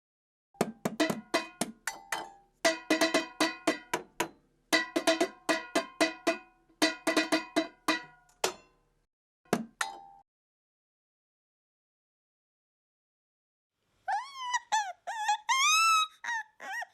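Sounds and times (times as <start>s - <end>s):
bell-like percussion tune: 4.8s - 8.6s.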